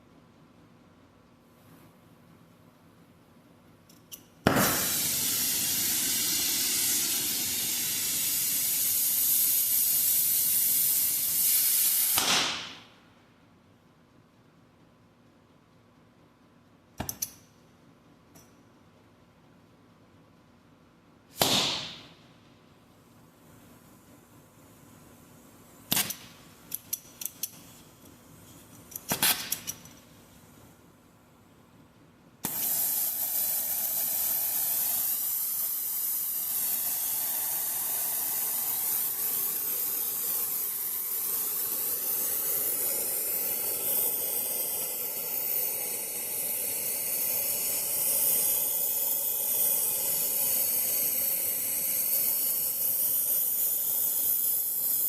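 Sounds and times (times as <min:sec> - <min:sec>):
welding arc hissing: 0:04.2 - 0:13.0, 0:21.3 - 0:22.3, 0:25.2 - 0:30.1, 0:32.4 - 0:55.0.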